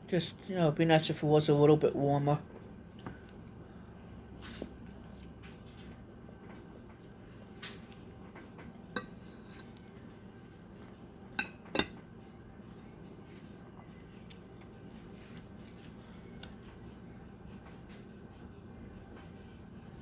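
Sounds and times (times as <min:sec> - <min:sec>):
tableware clinking: 0:11.4 - 0:12.0.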